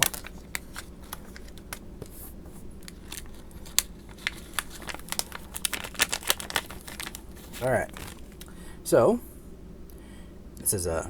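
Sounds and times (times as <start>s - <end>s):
hardware clicks and packaging rustles: 0.0s - 8.6s.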